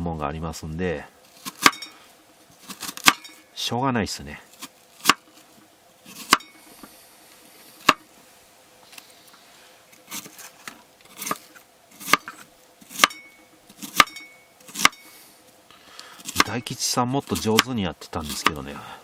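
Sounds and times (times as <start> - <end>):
knife chopping on cutting board: 1.4 - 1.9, 2.6 - 3.3, 4.6 - 5.2, 6.1 - 6.5, 7.8 - 8.0, 11.1 - 11.4, 12.0 - 13.2, 13.8 - 15.0, 16.2 - 16.6, 17.4 - 18.6.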